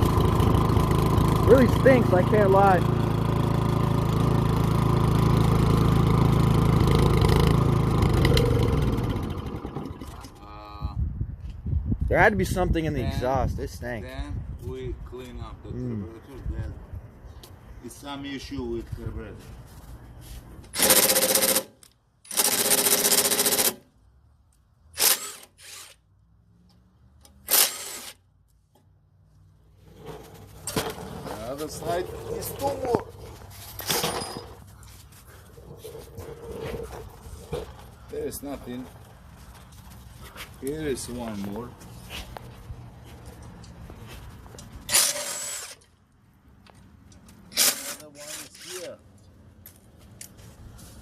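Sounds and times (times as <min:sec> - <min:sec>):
snowblower engine running: 0:00.0 - 0:10.2
cordless drill whirring: 0:25.0 - 0:26.0, 0:27.5 - 0:28.2.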